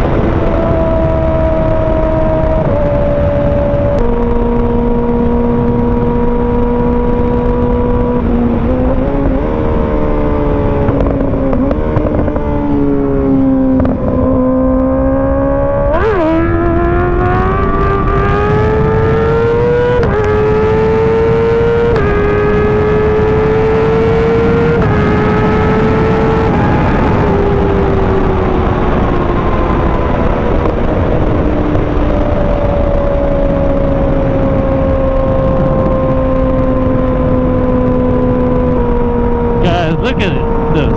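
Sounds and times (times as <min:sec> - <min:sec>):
motorcycle engine running: 0:00.0 - 0:15.6.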